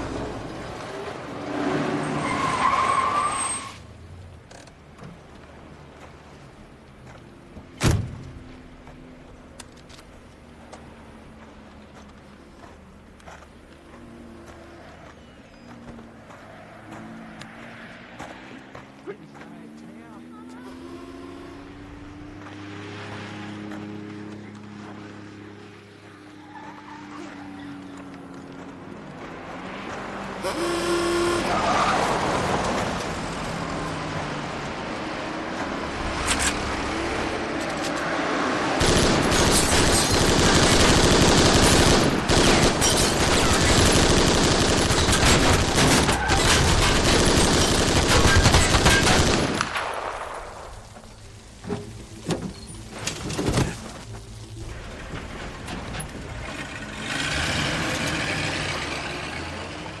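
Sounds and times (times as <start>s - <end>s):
rapid automatic gunfire: 38.8s - 49.7s.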